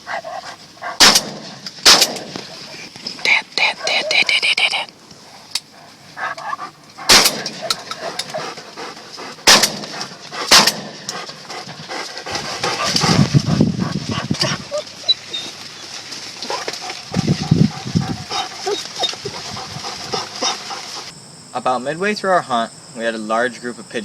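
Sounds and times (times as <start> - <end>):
shotgun shots: 1.0 - 2.4, 7.1 - 7.6, 9.4 - 11.1.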